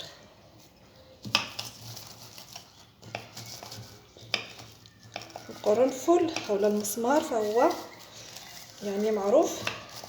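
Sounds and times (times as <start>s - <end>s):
scraping grinds on crockery: 3.2s - 10.0s.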